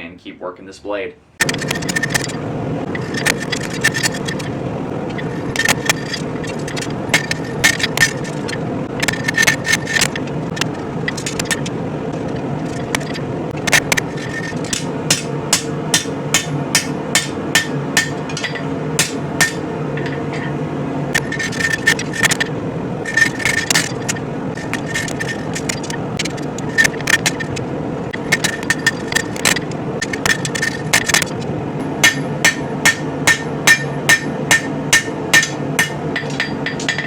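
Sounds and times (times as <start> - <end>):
gas forge roaring: 1.4 - 37.0
hammer striking steel on anvil: 14.7 - 20.6, 31.8 - 37.0.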